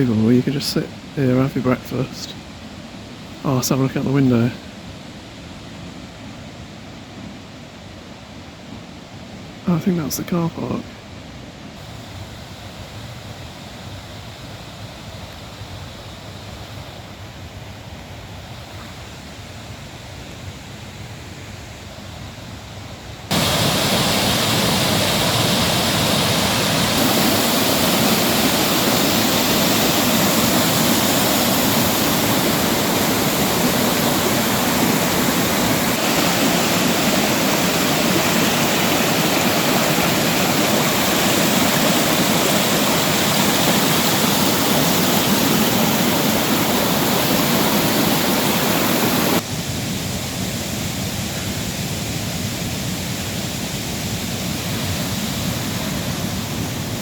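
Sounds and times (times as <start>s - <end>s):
waterfall roar: 23.3s - 57.0s.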